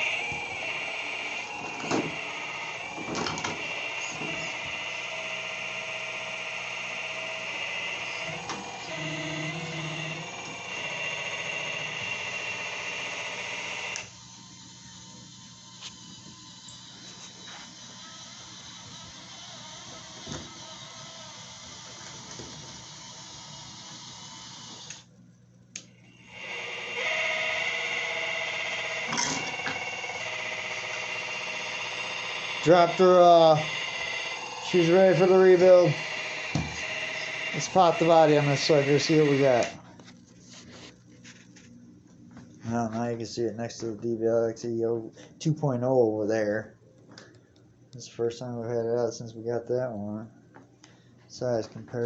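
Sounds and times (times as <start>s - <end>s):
toy excavator motor whining: 0.0s - 25.1s, 25.8s - 39.8s.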